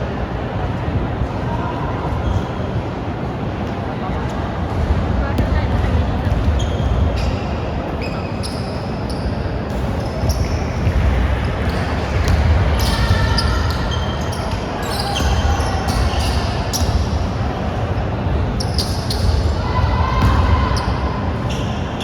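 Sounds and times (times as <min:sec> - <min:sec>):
steady hall rumble: 0:00.0 - 0:22.0
sneakers squeaking: 0:04.7 - 0:22.0
basketball dribbling: 0:10.2 - 0:13.8.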